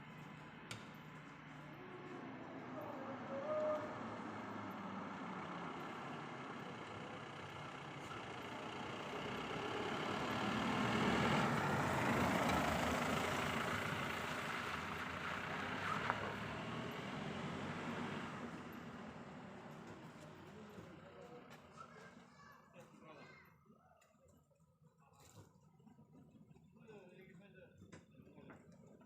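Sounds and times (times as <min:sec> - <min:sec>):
road vehicle noise: 0:00.0 - 0:22.7.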